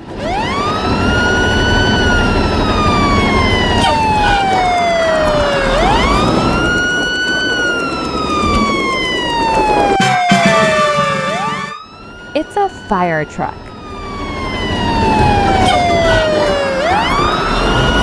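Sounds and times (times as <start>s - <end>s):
fire truck siren wailing: 0.0s - 18.0s.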